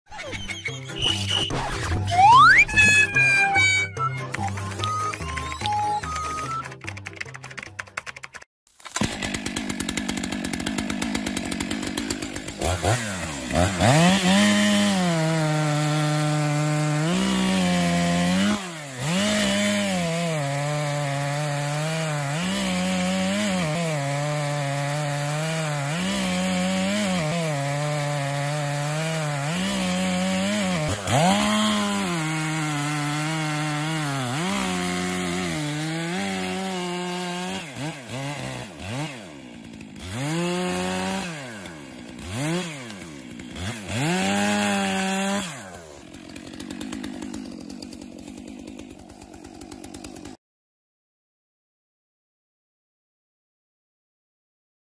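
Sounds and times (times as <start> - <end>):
chainsaw cutting at high revs: 8.8 - 50.4
chainsaw engine revving in blips: 8.9 - 50.4.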